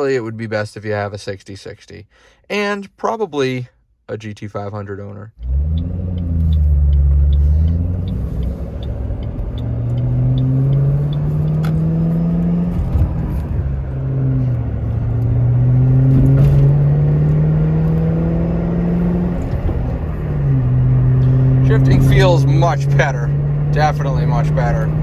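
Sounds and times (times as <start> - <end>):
car engine accelerating: 5.4 - 25.0
faint regular ticking: 5.6 - 11.7.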